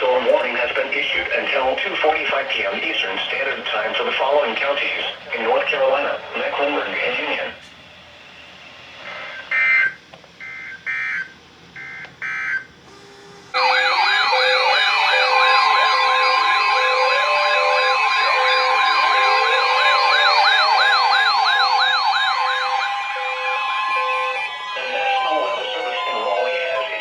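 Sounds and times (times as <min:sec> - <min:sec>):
rising and falling siren wails: 0:13.5 - 0:27.0
rapid beeps: 0:13.6 - 0:23.0
digital data bursts: 0:13.6 - 0:26.9.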